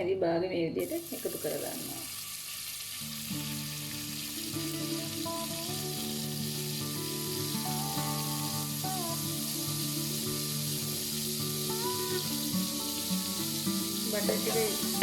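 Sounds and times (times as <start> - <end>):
butter sizzling in a pot: 0.8 - 15.0
background music: 3.1 - 15.0.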